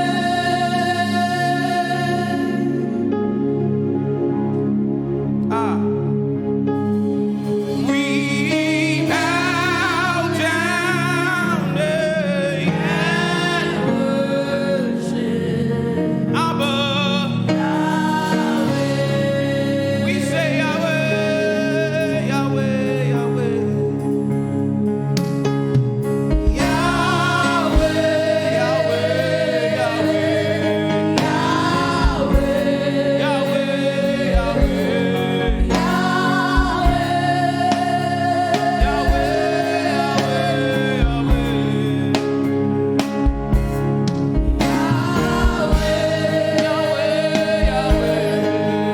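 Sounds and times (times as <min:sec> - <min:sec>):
person singing gospel: 0:00.0 - 0:04.4, 0:05.4 - 0:06.4, 0:07.4 - 0:24.6, 0:26.4 - 0:48.9
sustained keyboard chords: 0:00.0 - 0:48.9
low beat thumps: 0:26.3 - 0:28.5, 0:31.3 - 0:32.8, 0:34.2 - 0:37.9, 0:38.6 - 0:39.7, 0:41.0 - 0:42.4, 0:43.0 - 0:48.4.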